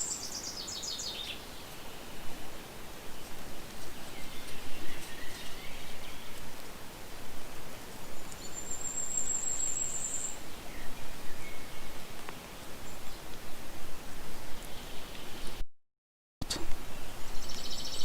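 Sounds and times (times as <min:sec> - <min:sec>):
bird chirps: 0:00.0 - 0:02.0, 0:04.0 - 0:06.4, 0:08.2 - 0:12.0, 0:17.0 - 0:18.0
light rustle: 0:00.0 - 0:15.6.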